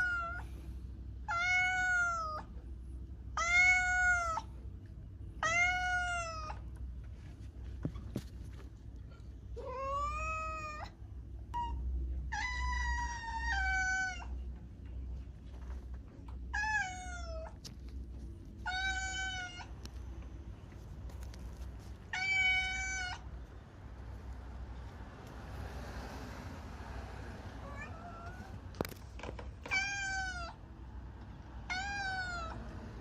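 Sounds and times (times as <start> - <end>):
cat meowing: 0.0 - 0.5, 1.3 - 2.5, 3.4 - 4.5, 5.4 - 6.6, 9.6 - 14.4, 16.5 - 17.6, 18.6 - 19.8, 22.1 - 23.3, 27.6 - 28.6, 29.6 - 30.6, 31.6 - 32.7
steady low hum: 0.0 - 33.0.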